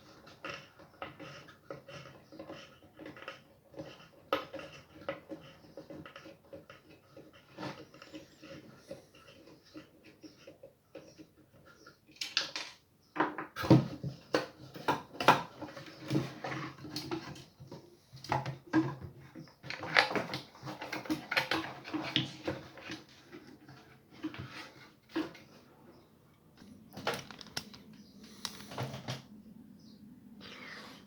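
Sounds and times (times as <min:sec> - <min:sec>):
plastic and metal parts rattling: 0:26.6 - 0:29.2.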